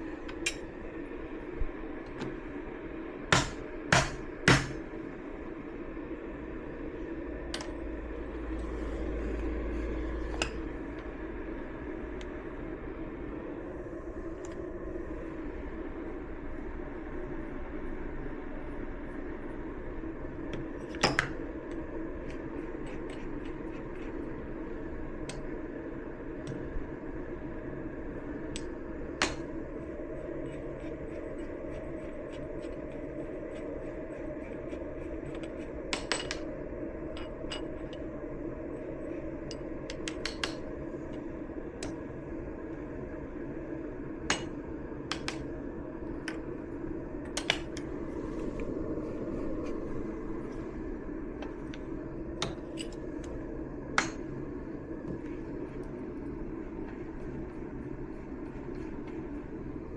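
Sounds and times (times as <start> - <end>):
steady low hum: 0.0 - 59.9.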